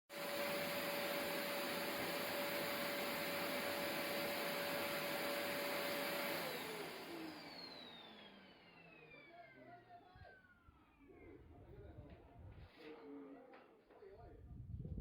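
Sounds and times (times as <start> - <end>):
vacuum cleaner running: 0.1 - 11.0
vacuum motor spinning down: 0.1 - 11.4.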